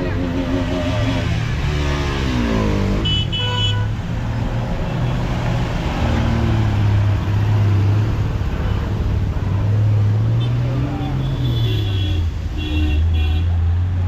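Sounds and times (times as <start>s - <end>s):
low rumble of traffic: 0.0s - 14.0s
vehicle horn honking: 3.0s - 3.9s.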